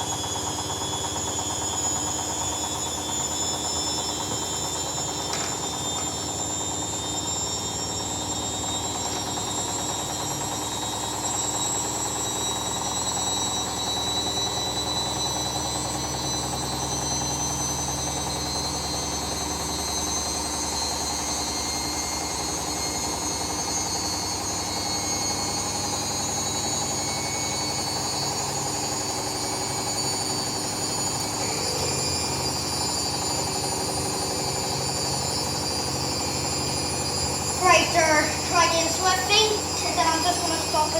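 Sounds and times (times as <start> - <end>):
washing machine drum spinning: 4.4 - 9.9.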